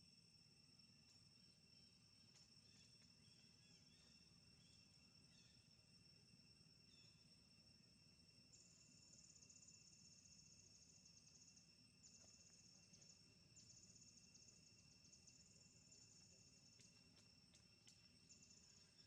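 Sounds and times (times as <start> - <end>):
insects trilling: 0.0 - 19.0.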